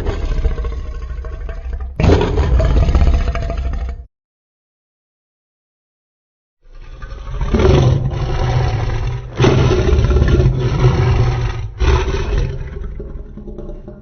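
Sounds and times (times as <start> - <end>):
harsh rumbling monster roar: 0.0 - 4.0, 6.7 - 13.4.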